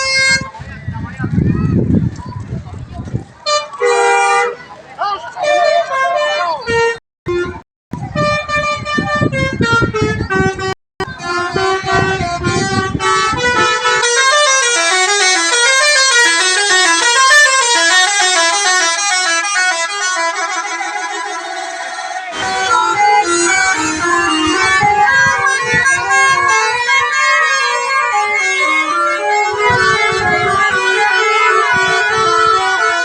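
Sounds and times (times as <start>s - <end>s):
musical air horn playing a tune: 0.0s - 0.6s, 3.5s - 4.6s, 5.4s - 33.0s.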